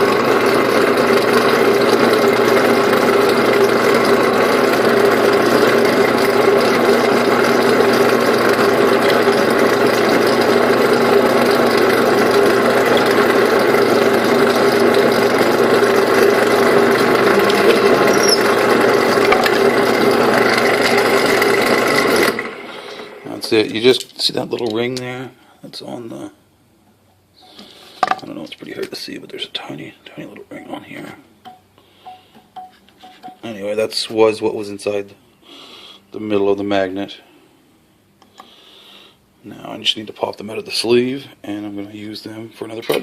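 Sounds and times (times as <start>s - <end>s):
drill press running: 0.0s - 24.7s.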